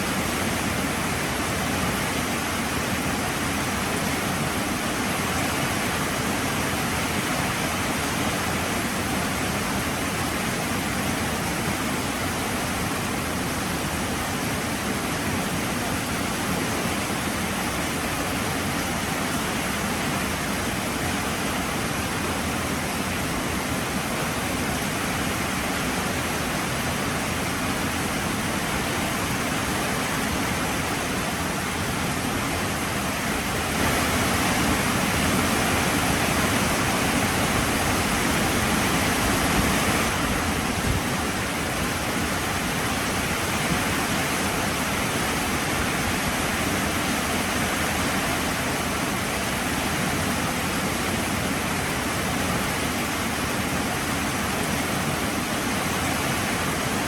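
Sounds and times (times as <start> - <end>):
heavy rain hissing: 0.0 - 57.0.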